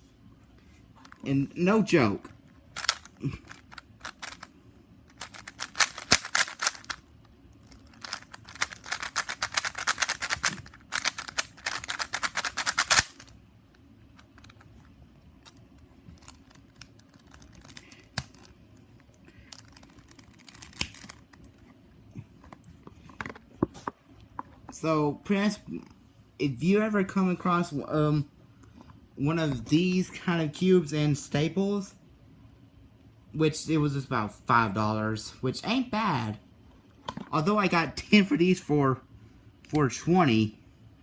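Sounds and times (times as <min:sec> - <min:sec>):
speed cube clicking turns: 0:02.8 - 0:04.5, 0:05.1 - 0:07.0, 0:07.6 - 0:13.3.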